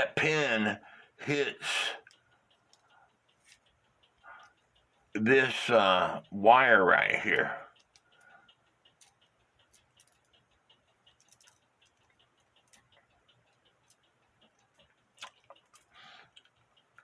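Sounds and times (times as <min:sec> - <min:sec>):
clock ticking: 0:00.0 - 0:17.0.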